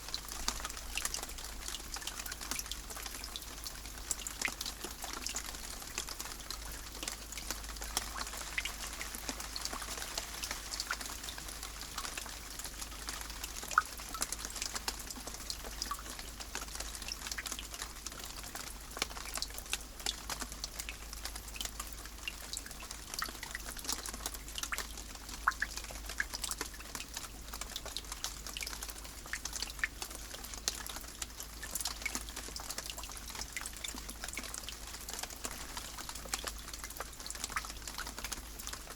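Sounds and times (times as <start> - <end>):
raindrops ticking: 0.0 - 38.9
rain hissing: 35.4 - 36.4.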